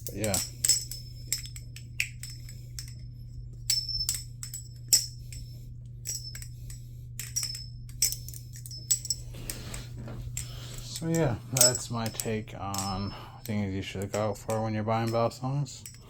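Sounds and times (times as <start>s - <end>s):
steady low hum: 0.0s - 16.0s
butterfly knife clacking: 10.4s - 16.0s.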